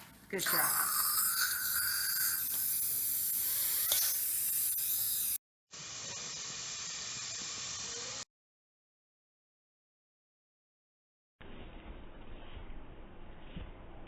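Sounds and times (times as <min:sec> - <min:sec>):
dental equipment hissing: 0:00.4 - 0:08.3.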